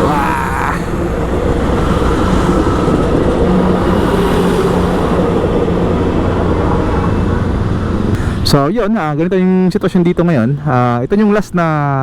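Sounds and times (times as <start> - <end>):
train wheels on track: 0.0 - 8.8.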